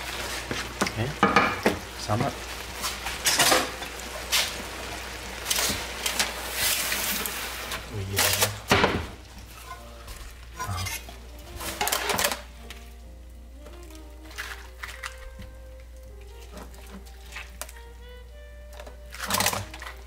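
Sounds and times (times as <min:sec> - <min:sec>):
metal utensil scraping a pan: 0:02.8 - 0:04.6, 0:05.4 - 0:08.6, 0:09.4 - 0:12.5.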